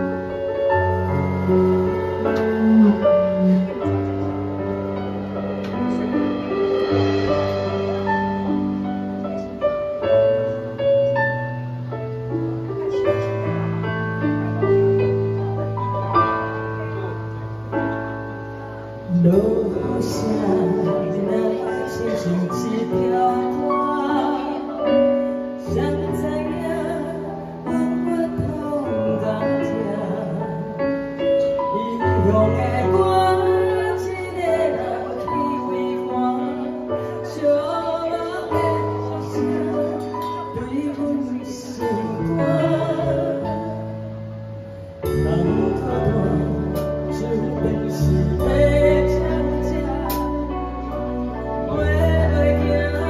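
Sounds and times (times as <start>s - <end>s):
deep bass notes: 0.0s - 9.5s
music with sustained melody: 0.0s - 53.0s
person singing: 45.0s - 53.0s.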